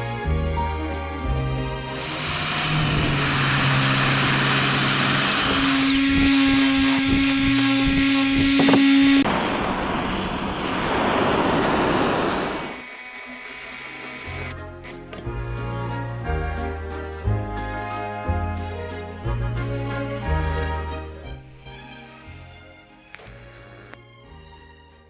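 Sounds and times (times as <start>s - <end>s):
power saw cutting wood: 1.8s - 9.3s, 11.0s - 15.2s.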